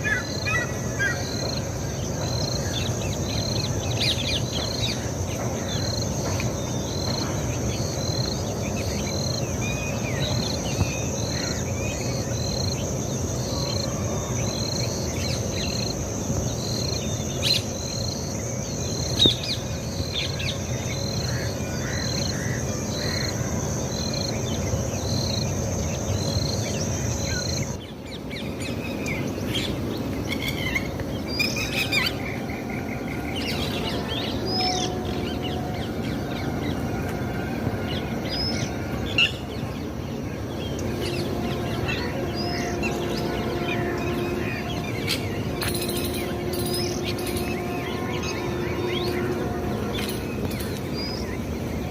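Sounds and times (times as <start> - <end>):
high-pitched insect drone: 0.0 - 51.9.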